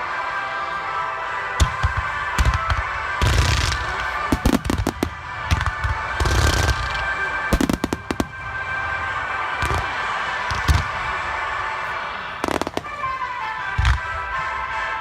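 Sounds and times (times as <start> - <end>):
fireworks bangs and booms: 1.1 - 15.0.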